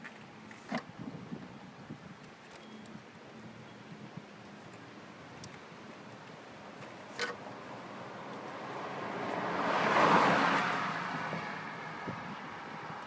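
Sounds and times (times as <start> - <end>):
vehicle passing by: 7.5 - 13.0.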